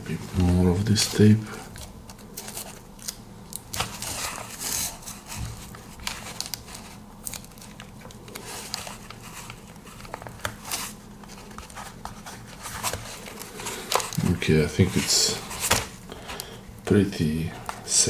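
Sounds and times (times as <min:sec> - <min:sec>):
packaging crinkling and rustling: 0:00.0 - 0:16.6.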